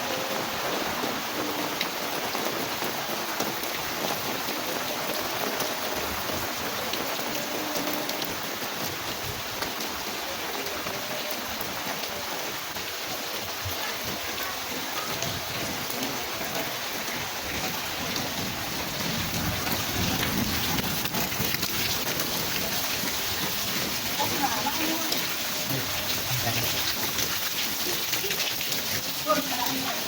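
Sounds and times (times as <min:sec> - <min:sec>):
heavy rain in wind: 0:00.0 - 0:30.0.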